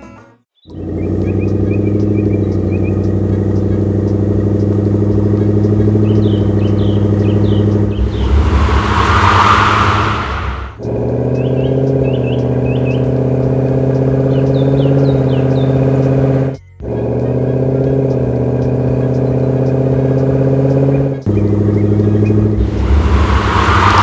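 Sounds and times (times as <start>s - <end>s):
vehicle engine idling: 0.7s - 24.0s.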